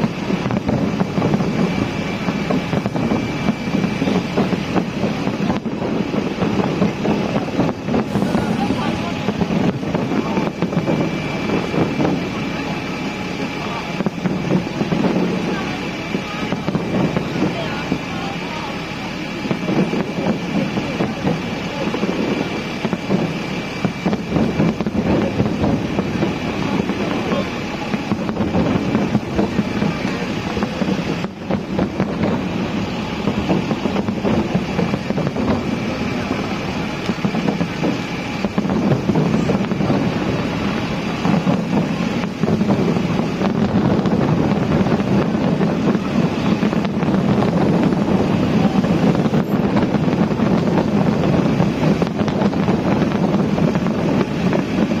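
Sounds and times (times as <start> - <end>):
wind noise on microphone: 0.0 - 55.0
murmur of voices: 1.1 - 55.0.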